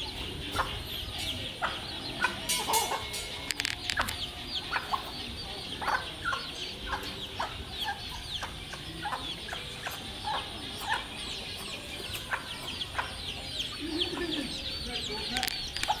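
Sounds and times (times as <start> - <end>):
chickens clucking: 0.0 - 16.0
chicks peeping: 0.0 - 16.0.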